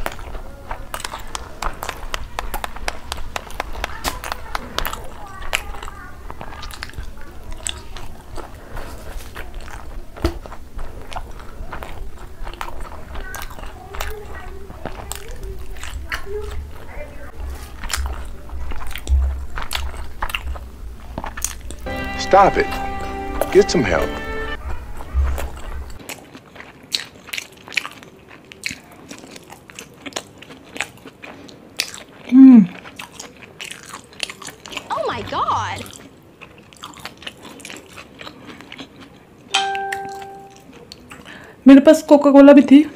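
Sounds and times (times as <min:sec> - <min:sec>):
wet mouth clicks and smacks: 0:00.0 - 0:06.0
person chewing food: 0:00.0 - 0:21.9, 0:24.6 - 0:34.9, 0:35.8 - 0:41.5
short voiced sound falling in pitch: 0:34.9 - 0:36.0.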